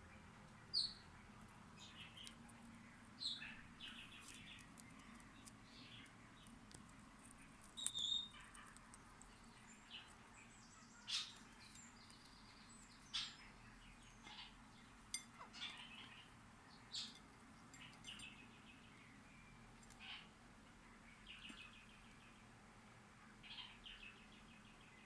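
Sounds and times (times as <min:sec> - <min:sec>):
parakeets chirping: 0:00.6 - 0:06.4, 0:07.3 - 0:18.6.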